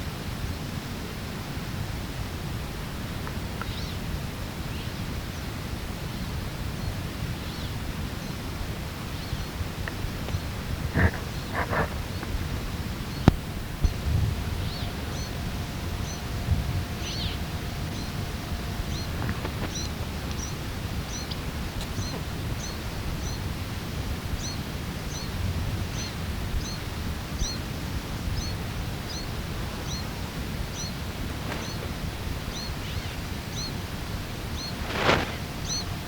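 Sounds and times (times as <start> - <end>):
low wind rumble: 0.0 - 36.0
tape hiss: 0.0 - 36.0
songbird high call: 13.1 - 23.5, 24.3 - 33.9, 34.5 - 36.0.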